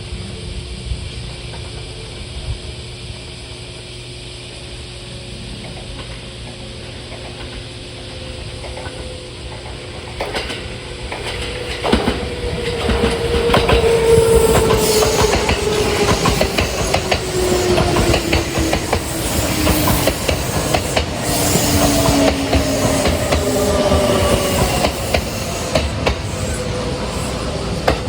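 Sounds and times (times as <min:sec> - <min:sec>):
electric train whine: 0:00.0 - 0:28.0
wheels clacking over rail joints: 0:05.6 - 0:28.0.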